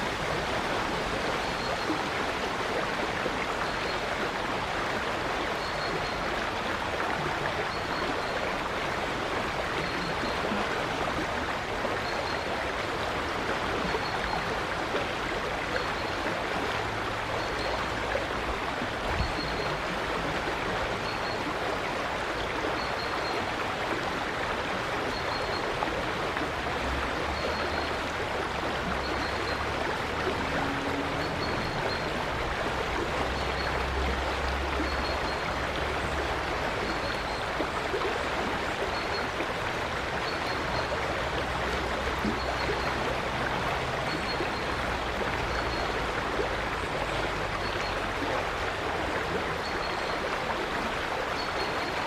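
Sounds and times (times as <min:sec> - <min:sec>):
river water flowing over stones: 0:00.0 - 0:52.0.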